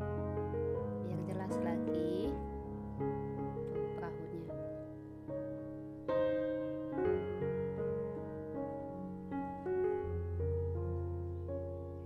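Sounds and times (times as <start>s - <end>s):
gentle piano music: 0.0s - 12.0s.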